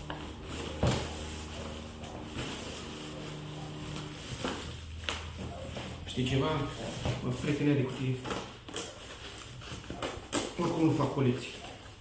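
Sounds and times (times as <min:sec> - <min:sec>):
steady low hum: 0:00.0 - 0:06.9
cardboard box rubbing and scraping: 0:00.0 - 0:08.2.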